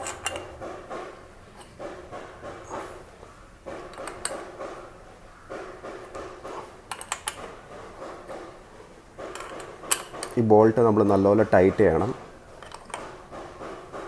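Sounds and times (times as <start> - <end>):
spanner and metal parts clinking: 0.0 - 2.2, 3.7 - 4.6, 6.6 - 7.5, 9.2 - 10.4, 11.1 - 13.2
handling noise: 0.0 - 14.0.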